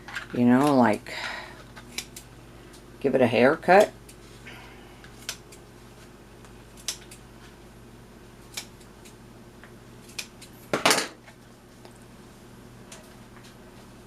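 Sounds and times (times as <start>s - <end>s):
scissors snipping: 1.9s - 2.2s, 6.8s - 7.2s, 8.5s - 9.2s, 10.0s - 10.5s.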